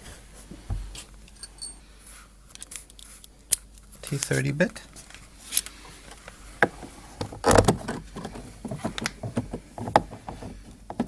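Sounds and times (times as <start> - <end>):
hand tools and metal parts clicking: 1.3 - 1.8.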